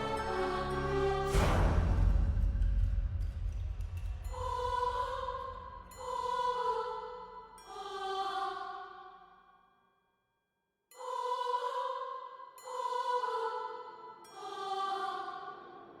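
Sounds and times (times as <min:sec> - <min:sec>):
deep low rumble: 0:01.3 - 0:05.9.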